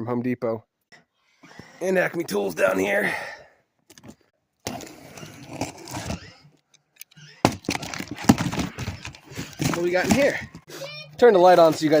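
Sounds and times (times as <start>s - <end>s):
cardboard box scraping and rustling: 4.7s - 6.3s.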